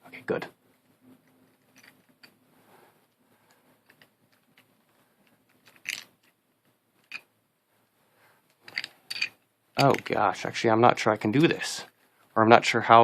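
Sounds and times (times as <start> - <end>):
plastic puzzle pieces clicking: 3.8 - 6.4, 8.7 - 10.1.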